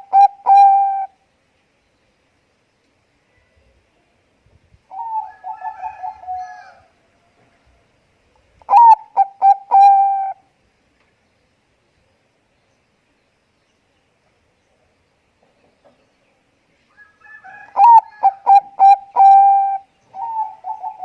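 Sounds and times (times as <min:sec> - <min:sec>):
dove cooing: 0:00.0 - 0:01.2, 0:04.9 - 0:06.9, 0:08.7 - 0:10.4, 0:17.5 - 0:21.0.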